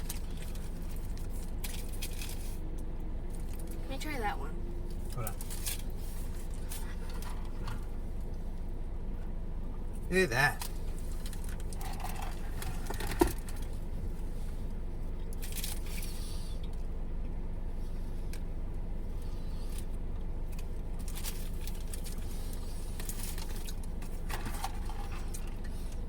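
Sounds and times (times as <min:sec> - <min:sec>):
car engine idling: 0:00.0 - 0:26.0
light scrapes and rustles: 0:05.0 - 0:08.4.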